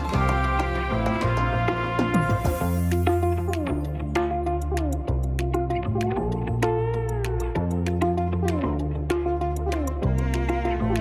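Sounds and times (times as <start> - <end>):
sliding melody: 0.0 - 3.8
held bass notes: 0.0 - 11.0.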